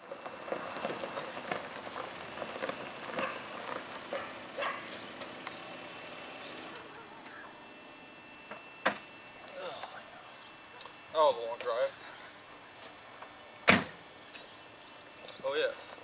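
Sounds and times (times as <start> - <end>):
rural outdoor background: 0.0 - 16.0
insect chirping: 0.2 - 11.1, 12.1 - 13.5.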